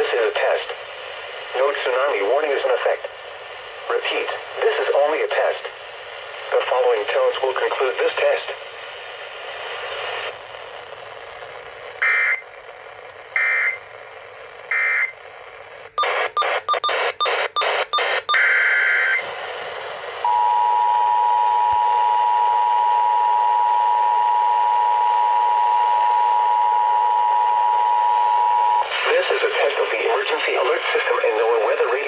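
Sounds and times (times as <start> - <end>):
radio background hiss: 0.0 - 20.3, 28.8 - 32.0
radio retuning clicks: 2.7 - 4.4, 19.2 - 20.2.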